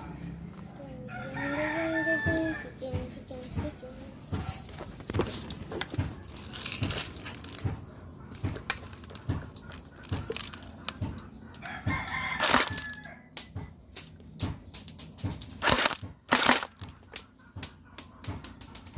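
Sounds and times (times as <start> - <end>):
rooster crowing: 1.0 - 2.8, 11.6 - 13.4.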